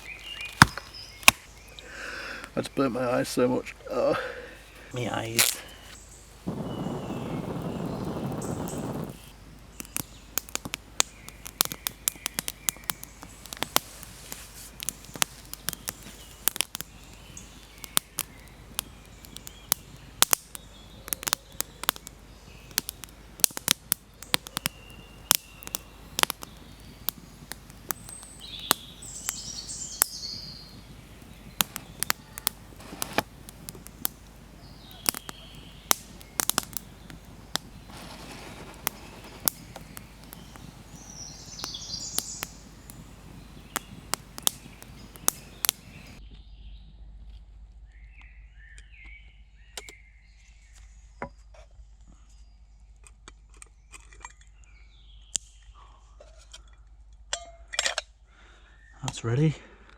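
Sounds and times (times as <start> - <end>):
wood fire crackling and popping: 0.0 - 3.4, 4.2 - 46.2
birds chirping: 0.0 - 46.9.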